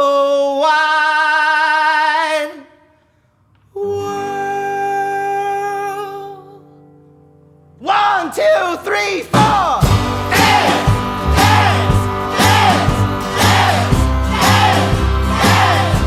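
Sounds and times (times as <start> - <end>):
held chord: 9.9 - 16.0.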